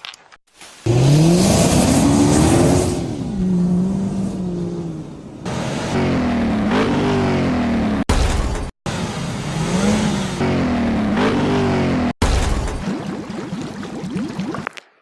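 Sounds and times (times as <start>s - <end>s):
car engine revving: 0.9s - 8.1s, 8.9s - 12.2s.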